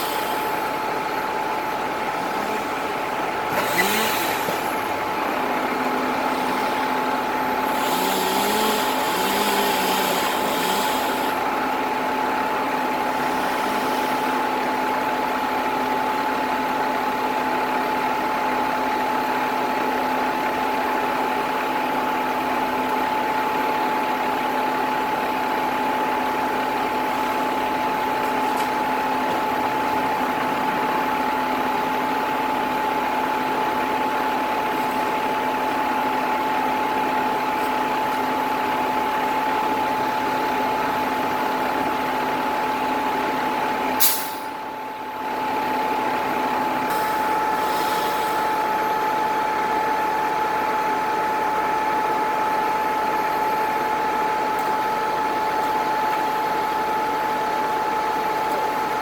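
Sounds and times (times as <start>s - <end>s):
constant whine: 0.0s - 19.0s, 48.3s - 59.0s
heavy engine running: 0.0s - 59.0s.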